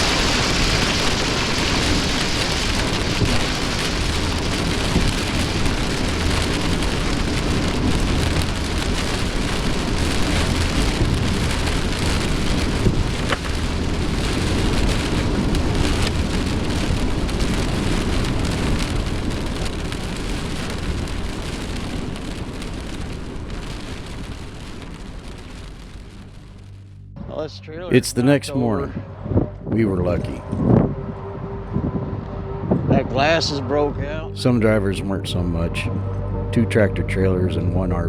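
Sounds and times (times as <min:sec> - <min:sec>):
strong wind: 0:00.0 - 0:26.4, 0:27.9 - 0:37.6
heavy rain on truck: 0:00.0 - 0:26.9, 0:27.9 - 0:29.0, 0:34.3 - 0:38.0
low rumble: 0:00.0 - 0:38.0.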